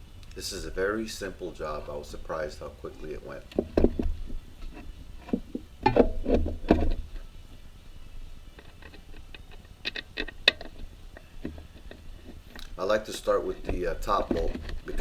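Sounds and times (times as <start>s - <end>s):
knocks of metal parts handled: 3.3s - 7.3s, 8.6s - 15.0s.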